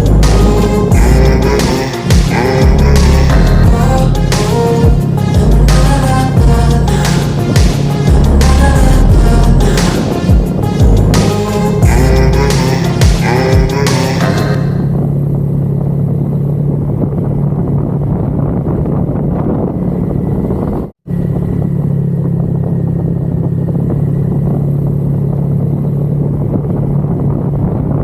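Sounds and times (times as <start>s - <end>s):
rushing road noise: 0.0s - 28.0s
scooter engine humming: 0.0s - 28.0s.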